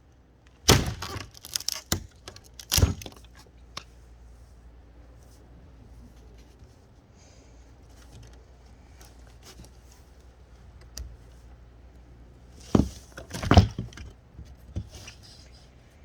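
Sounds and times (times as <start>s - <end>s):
wood knocks and rattles: 0.7s - 3.4s, 12.6s - 15.0s.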